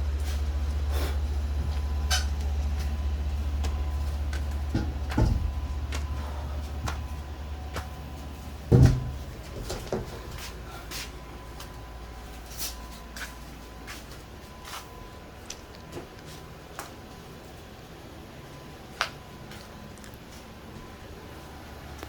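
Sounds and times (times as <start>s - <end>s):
low steady hum: 0.0s - 22.0s
heavy thump: 4.7s - 5.8s, 8.7s - 10.1s.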